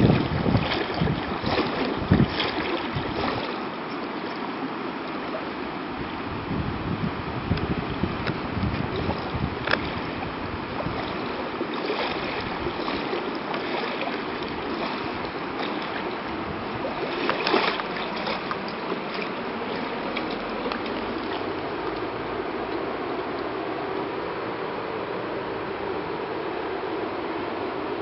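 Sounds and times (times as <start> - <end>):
loud water splash: 0.0 - 4.3, 8.7 - 22.0
water sloshing and splashing: 0.0 - 6.3, 7.5 - 24.1.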